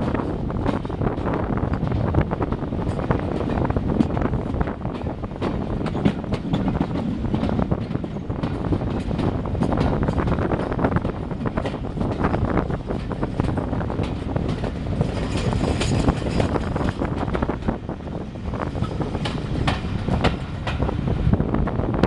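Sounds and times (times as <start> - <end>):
train rumbling past: 0.0 - 22.0
wheels clicking and clattering on track: 0.0 - 22.0.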